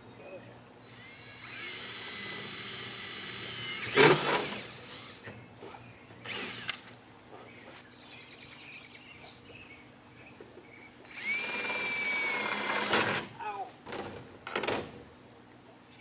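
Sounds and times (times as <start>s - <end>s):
power drill running: 0.9s - 5.3s, 6.2s - 6.8s, 11.1s - 13.3s.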